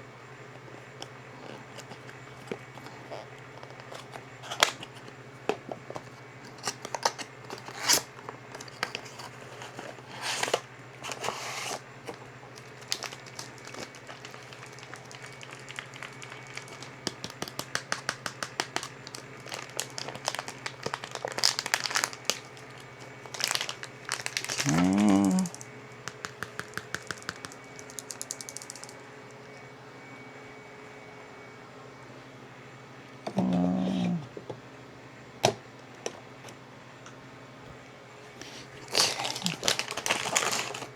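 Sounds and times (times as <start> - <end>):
plastic packaging crinkling: 1.4 - 29.0, 38.4 - 40.9.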